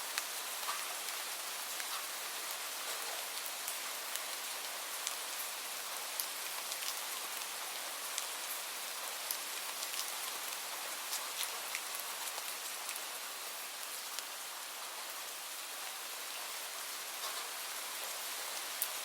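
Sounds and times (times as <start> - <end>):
light rain hiss: 0.0 - 19.0
raindrops ticking: 2.8 - 5.5, 6.1 - 13.1.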